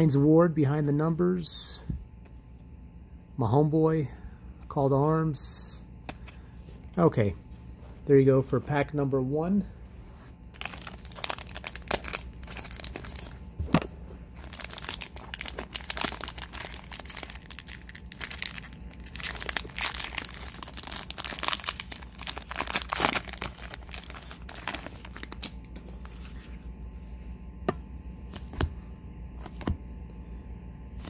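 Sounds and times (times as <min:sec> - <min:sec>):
wrapper crinkling and tearing: 0:10.5 - 0:13.4, 0:14.4 - 0:25.8.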